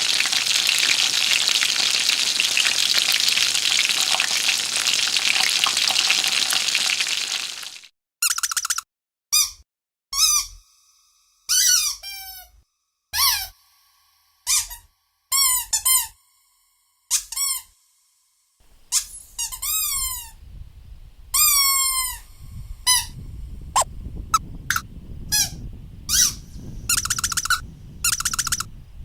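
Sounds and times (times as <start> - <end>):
high squeaks: 10.2 - 10.6, 14.5 - 16.2, 17.1 - 17.7, 18.9 - 20.4, 21.4 - 22.2.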